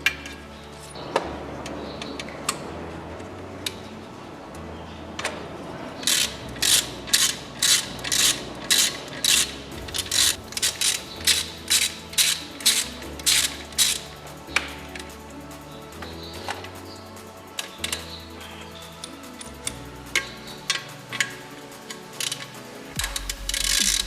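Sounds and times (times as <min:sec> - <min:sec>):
ratchet wrench clicking: 0:06.0 - 0:15.1, 0:17.6 - 0:24.0.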